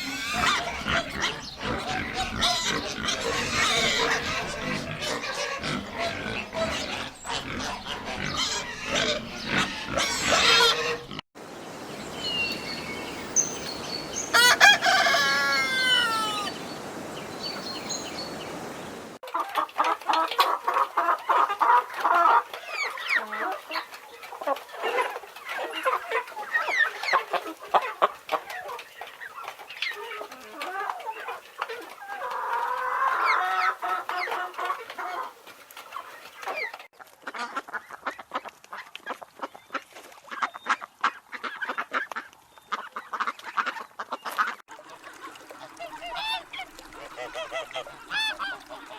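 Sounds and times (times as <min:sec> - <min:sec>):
hens clucking: 0:00.0 - 0:11.2, 0:12.0 - 0:38.5, 0:41.3 - 0:48.9
rooster crowing: 0:14.2 - 0:16.6.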